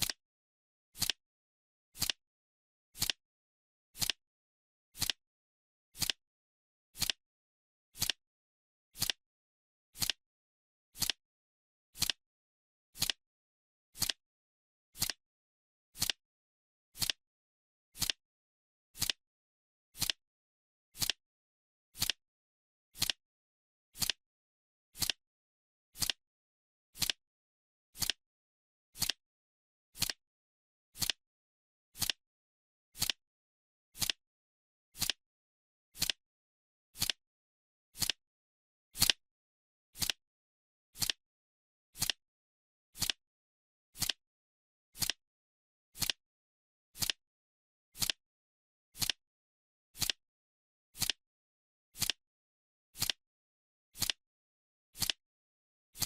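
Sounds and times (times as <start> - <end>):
clock timer ticking: 23.0 - 23.2, 36.0 - 36.2, 37.0 - 37.2, 40.0 - 40.2, 41.0 - 41.2, 42.0 - 42.2, 43.0 - 43.2, 45.0 - 45.2, 47.0 - 47.2, 48.0 - 48.2, 49.0 - 49.2, 50.0 - 50.2, 51.0 - 51.2, 52.0 - 52.2, 53.0 - 53.2, 54.0 - 54.2, 55.0 - 55.2.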